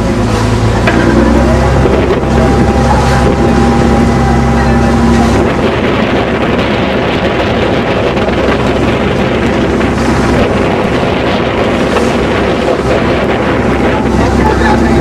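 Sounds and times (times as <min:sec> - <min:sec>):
boat engine running: 0:00.0 - 0:15.0
wind buffeting microphone: 0:00.0 - 0:15.0.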